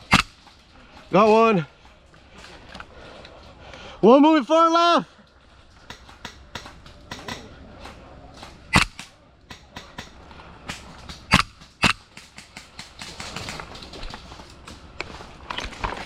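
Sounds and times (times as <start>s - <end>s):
airsoft gun shots: 0.0s - 0.4s, 8.7s - 9.1s, 11.3s - 12.2s.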